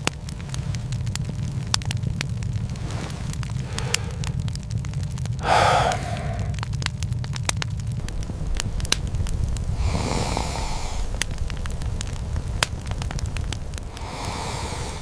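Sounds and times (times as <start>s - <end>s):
fire crackling and popping: 0.0s - 15.0s
low rumble: 0.8s - 15.0s
soft hissing: 2.6s - 4.5s, 5.4s - 6.6s, 8.1s - 15.0s.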